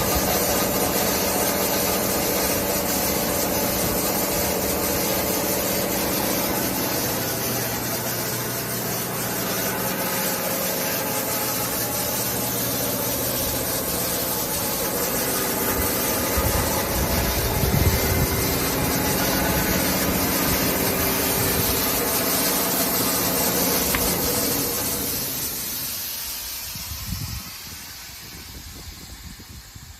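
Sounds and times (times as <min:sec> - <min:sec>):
belt sander running: 0:00.0 - 0:29.9.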